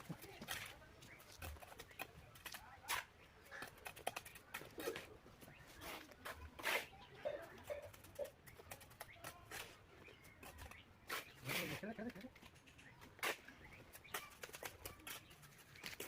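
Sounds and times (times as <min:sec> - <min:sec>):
trowel knocking and scraping bricks: 0:00.0 - 0:11.4.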